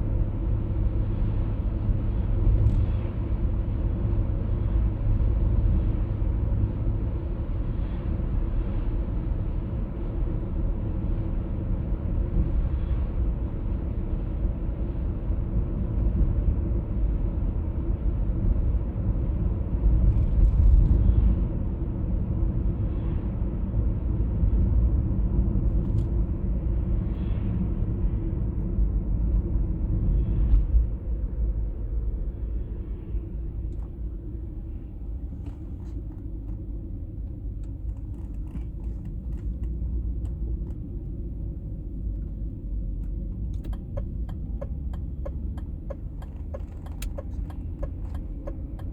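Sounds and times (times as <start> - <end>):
car driving noise: 24.5 - 48.9.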